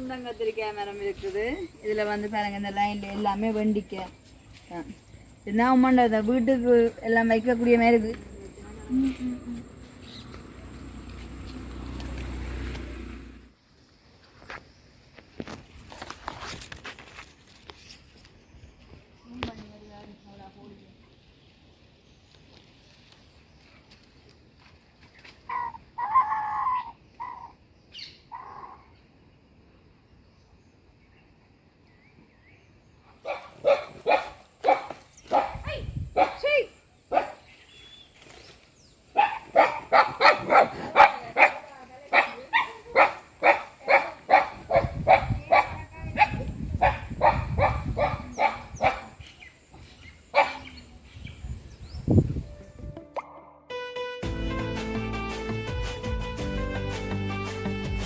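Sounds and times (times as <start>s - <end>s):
chickens squawking: 25.5s - 27.6s
dog barking: 33.2s - 35.6s, 36.2s - 36.5s, 37.1s - 37.4s, 39.2s - 49.2s, 50.3s - 50.7s.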